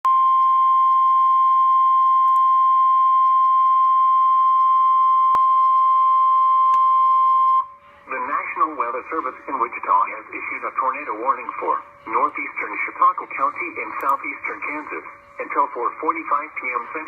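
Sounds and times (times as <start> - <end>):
steady alarm beep: 0.1 - 9.5.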